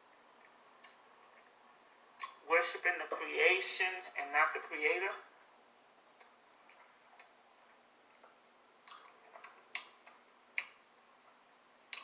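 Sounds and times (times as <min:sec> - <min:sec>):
mouth clicks and smacks eating: 0:00.1 - 0:02.4, 0:06.1 - 0:12.0.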